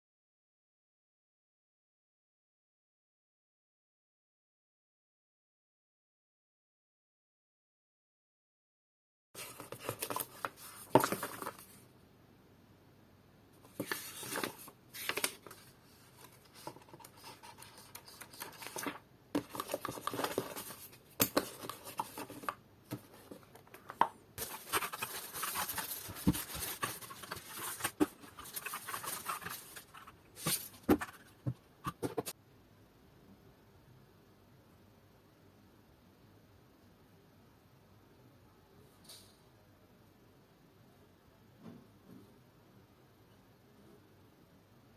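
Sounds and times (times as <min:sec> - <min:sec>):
packaging rustling: 0:09.4 - 0:11.8, 0:13.7 - 0:32.3.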